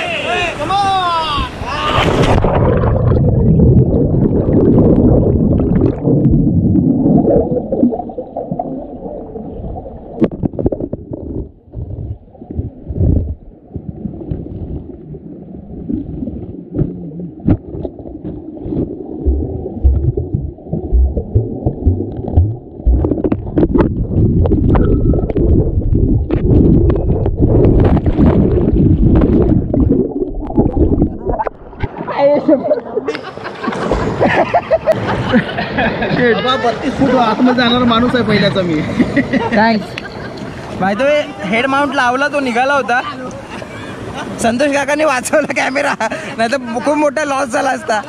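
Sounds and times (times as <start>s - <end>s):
underwater rumbling and gurgling: 2.0s - 35.2s.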